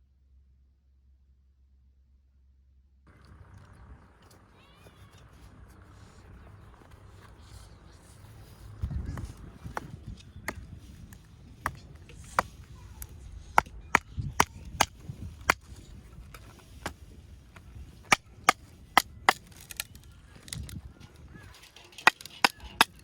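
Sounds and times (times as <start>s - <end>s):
axe chopping firewood: 9.0s - 20.1s, 21.8s - 23.0s.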